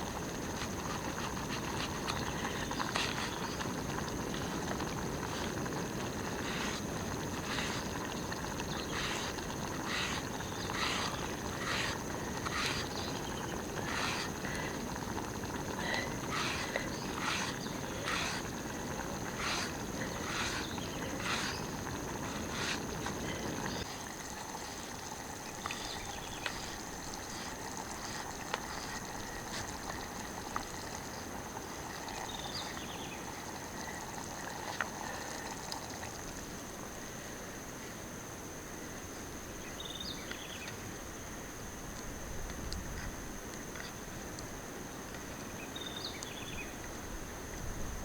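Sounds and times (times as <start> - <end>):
high-pitched insect trill: 0.1 - 34.6.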